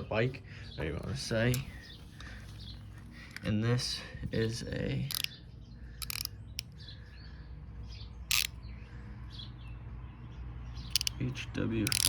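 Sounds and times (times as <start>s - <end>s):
ratchet metallic clicks: 5.1s - 5.4s, 6.0s - 6.8s, 8.3s - 8.6s, 10.9s - 11.2s.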